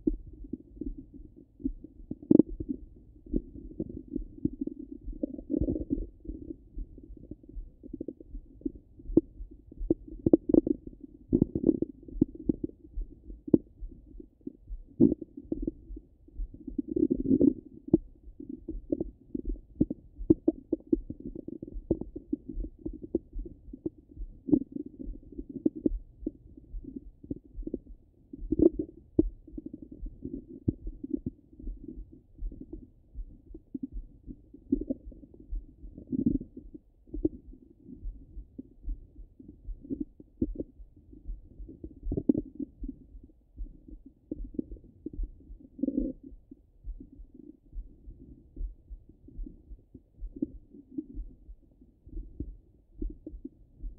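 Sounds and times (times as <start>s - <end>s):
stomach gurgling through stethoscope: 0.0s - 53.9s.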